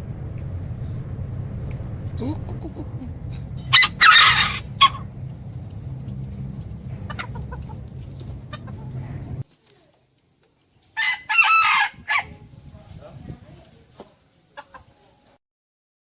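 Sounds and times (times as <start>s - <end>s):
low hum: 0.0s - 3.0s.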